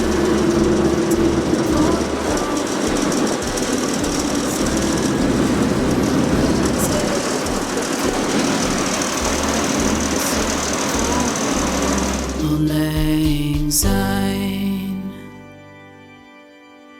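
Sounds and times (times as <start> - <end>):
boat engine running: 0.0 - 12.8.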